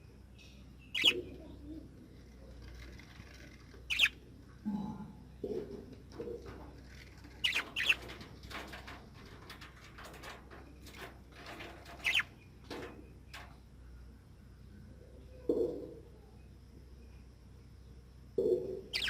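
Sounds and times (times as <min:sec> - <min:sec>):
parrot squawks: 0:01.0 - 0:01.2, 0:03.9 - 0:04.2
wings flapping and fluttering: 0:02.3 - 0:04.1, 0:05.9 - 0:13.6.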